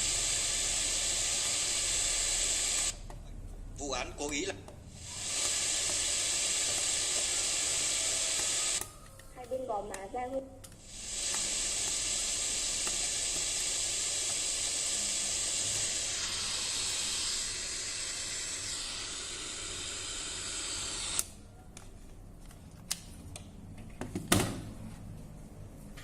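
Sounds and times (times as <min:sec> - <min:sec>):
spraying hiss: 0:00.0 - 0:03.0, 0:05.0 - 0:08.8, 0:10.8 - 0:21.2.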